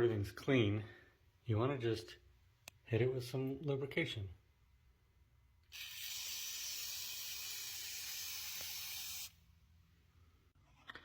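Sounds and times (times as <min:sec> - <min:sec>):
aerosol spray hissing: 0:05.7 - 0:09.4.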